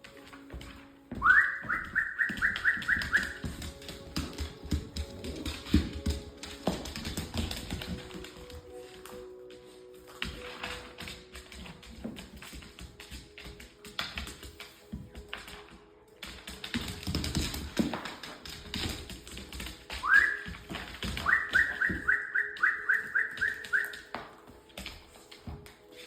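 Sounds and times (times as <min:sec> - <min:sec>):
background music: 0:00.0 - 0:26.0
whistle with rising pips: 0:01.2 - 0:03.4, 0:20.0 - 0:20.5, 0:21.2 - 0:24.1.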